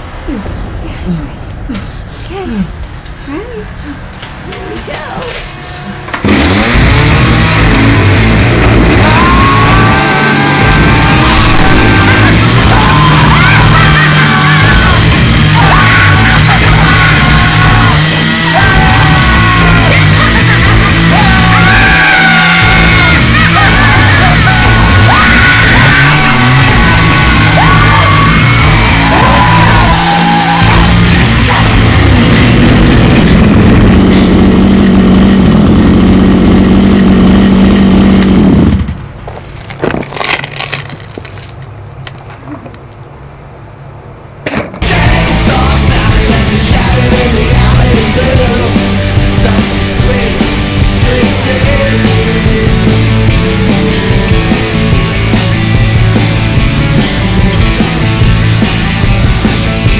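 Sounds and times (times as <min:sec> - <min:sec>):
loud rock music: 0:06.2 - 0:36.6, 0:44.8 - 0:59.9
person yelling: 0:08.8 - 0:32.2.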